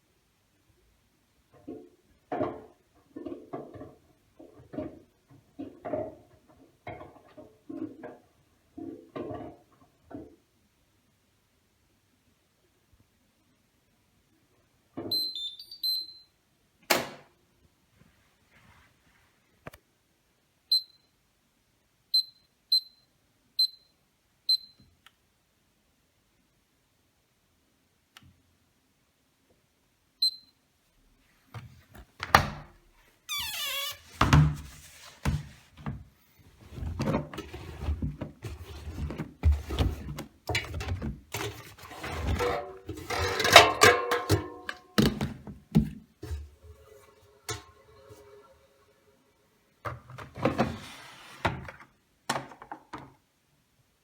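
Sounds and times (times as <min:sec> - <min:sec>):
washing machine panel beeps: 0:15.1 - 0:16.3, 0:20.7 - 0:21.0, 0:24.5 - 0:24.8, 0:30.2 - 0:30.5
click: 0:24.8 - 0:25.2, 0:28.1 - 0:28.3.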